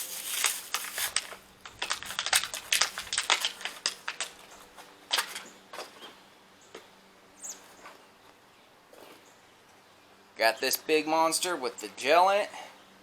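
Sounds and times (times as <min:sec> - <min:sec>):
small hard parts clicking and rattling: 0:00.2 - 0:05.5.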